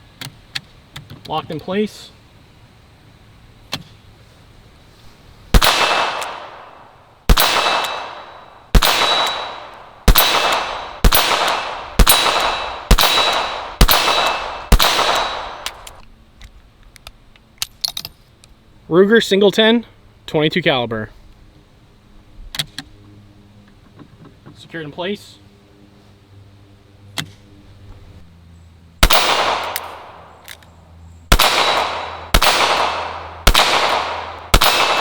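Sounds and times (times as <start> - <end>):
revolver gunshots with echo: 5.5 - 16.0, 29.0 - 30.4, 31.3 - 35.0.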